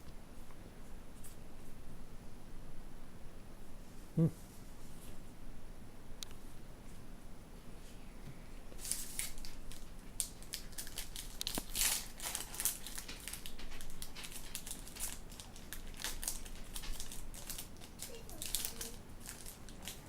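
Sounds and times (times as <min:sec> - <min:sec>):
foil wrapper crinkling: 0:08.8 - 0:20.0.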